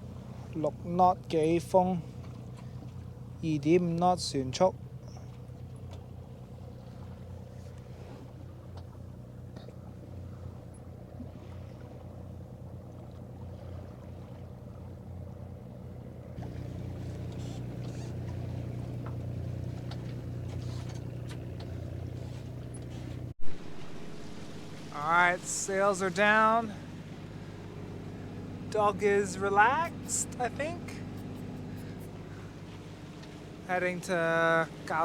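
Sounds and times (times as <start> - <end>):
diesel engine running: 14.6 - 35.0
faint clicks and rattles: 17.0 - 23.3.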